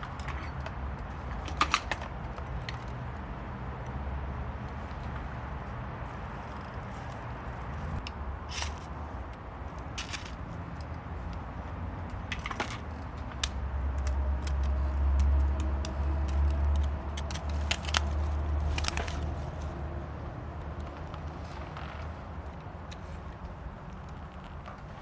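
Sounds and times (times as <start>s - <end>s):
low rumble of fire: 0.0s - 25.0s
wood fire crackling and snapping: 8.0s - 25.0s.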